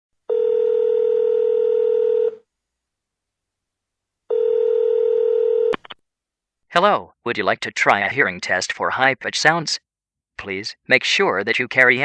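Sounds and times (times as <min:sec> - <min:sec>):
telephone ringback tone: 0:00.3 - 0:02.4, 0:04.3 - 0:05.8.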